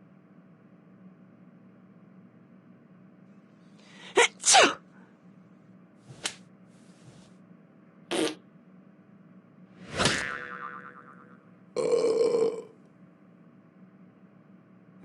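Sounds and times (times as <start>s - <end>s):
person sneezing: 4.0s - 4.8s.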